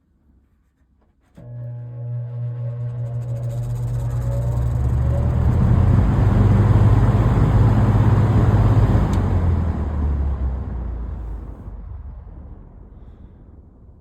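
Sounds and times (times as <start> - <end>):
box fan motor hum: 1.4 - 11.6.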